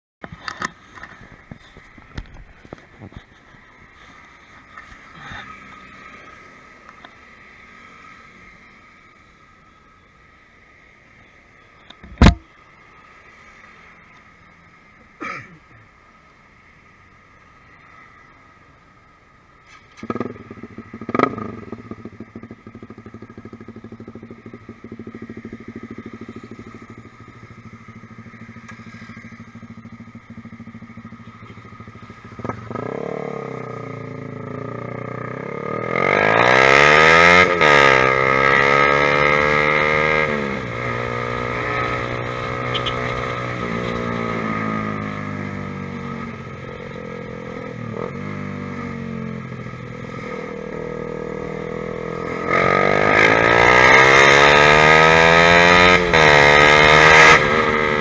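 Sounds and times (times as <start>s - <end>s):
motorcycle engine idling and revving: 0.2s - 58.0s.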